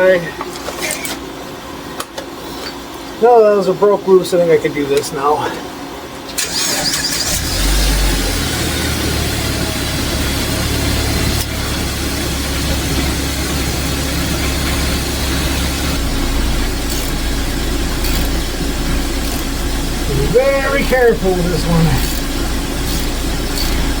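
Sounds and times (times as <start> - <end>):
heater fan and burner roar: 0.0 - 24.0
low hum: 7.9 - 24.0.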